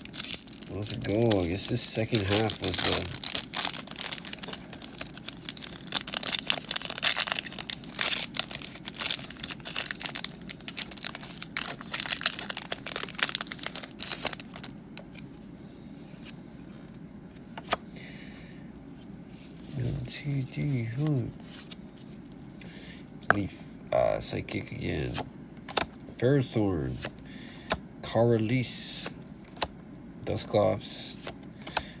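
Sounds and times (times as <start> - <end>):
foil wrapper crinkling and tearing: 0.0 - 14.7.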